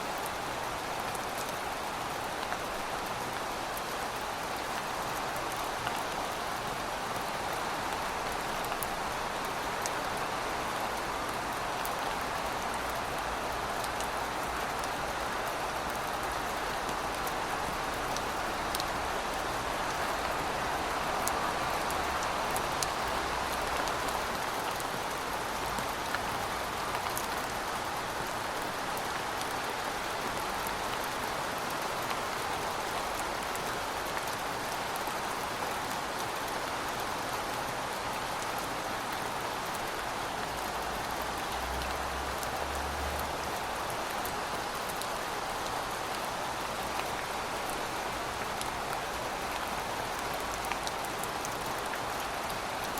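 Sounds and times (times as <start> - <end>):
steady rain falling: 0.0 - 52.9.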